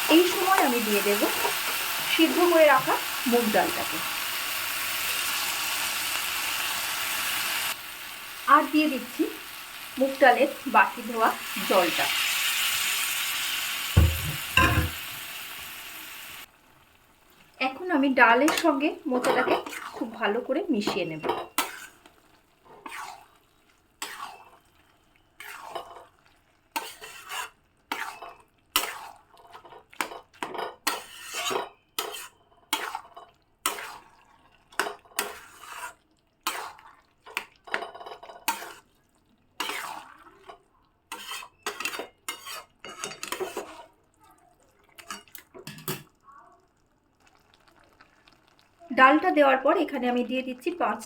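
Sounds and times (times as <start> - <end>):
spoon scraping a pan: 0.2 - 4.0, 10.0 - 15.7, 18.4 - 23.4, 24.0 - 24.7, 25.4 - 38.9, 39.6 - 44.0.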